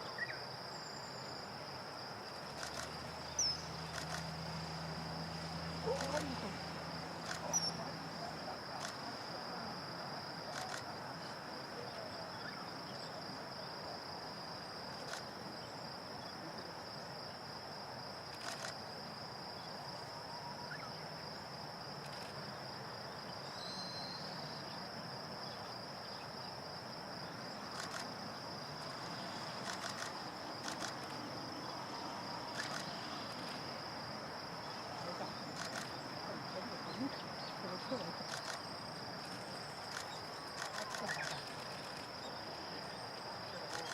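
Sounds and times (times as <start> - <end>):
high-pitched insect trill: 0.0 - 43.9
outdoor ambience hiss: 0.0 - 43.9
faint clicks: 2.6 - 2.9.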